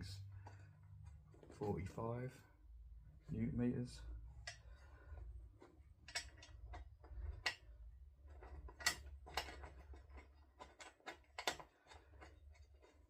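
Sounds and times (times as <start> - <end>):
low steady hum: 0.0 - 13.0
screws and tools clicking: 8.3 - 13.0.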